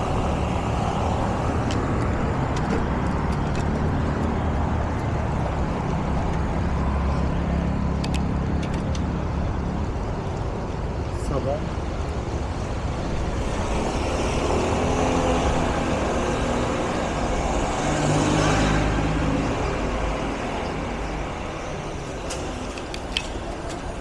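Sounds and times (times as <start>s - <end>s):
street traffic: 0.0s - 24.0s
sharp clicks: 22.0s - 24.0s.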